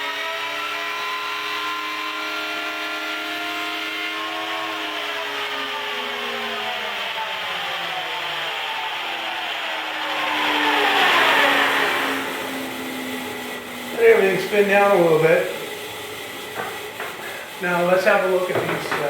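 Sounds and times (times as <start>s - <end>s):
machine motor spinning down: 0.0s - 19.0s.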